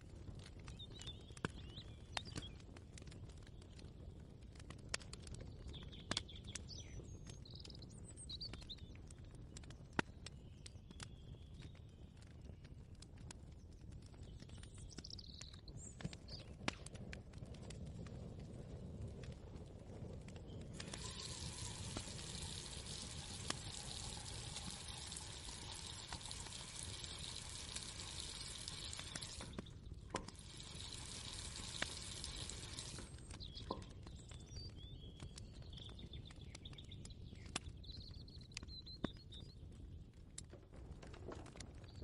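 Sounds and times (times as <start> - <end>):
birds chirping faintly: 20.2 - 40.1
water running: 20.8 - 33.1
small clicks and knocks: 25.5 - 35.4.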